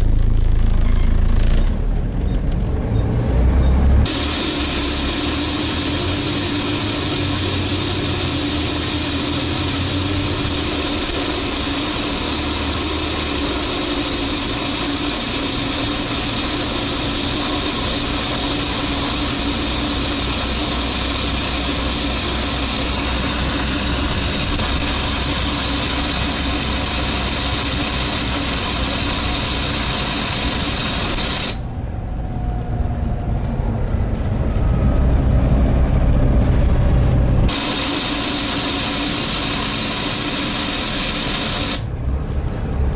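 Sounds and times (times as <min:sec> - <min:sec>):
bus engine humming: 0:00.0 - 0:42.9
loud rushing hiss: 0:04.0 - 0:31.7, 0:36.7 - 0:41.9.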